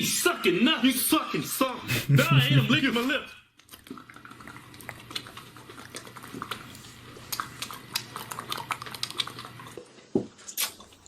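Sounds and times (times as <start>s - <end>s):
wet lip-smacking: 3.6s - 9.8s, 10.5s - 11.0s.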